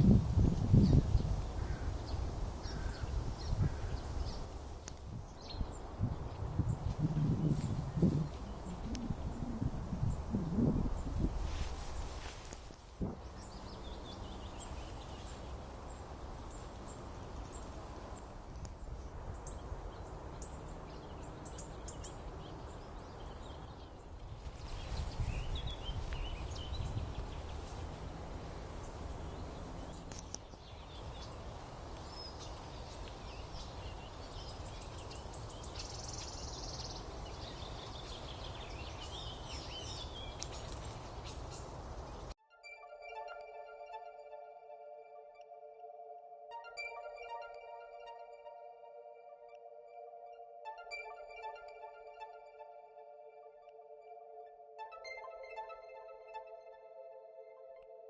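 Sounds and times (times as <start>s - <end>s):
birds chirping: 0.5s - 12.1s, 13.0s - 42.4s.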